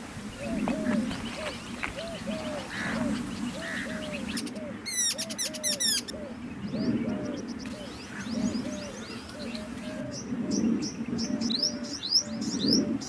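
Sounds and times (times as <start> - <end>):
birds calling: 0.0 - 13.0.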